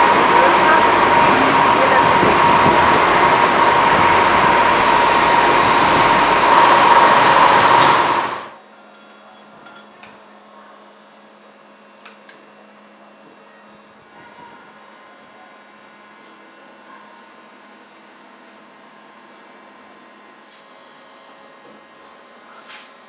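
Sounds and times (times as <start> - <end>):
cnc machine whining: 0.0 - 8.6.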